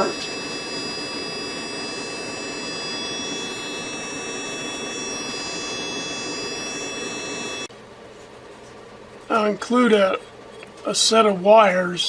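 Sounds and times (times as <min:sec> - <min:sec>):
speaker buzzing square-wave tone: 0:00.0 - 0:07.7.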